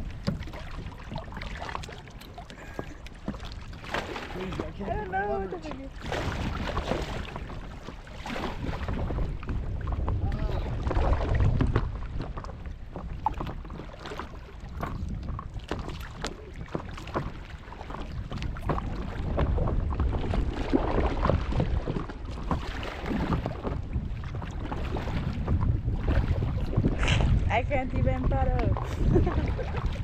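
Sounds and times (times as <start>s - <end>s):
paddle pulled through water: 0.0s - 30.0s
water splashing and lapping: 0.0s - 30.0s
wind on microphone: 0.0s - 30.0s.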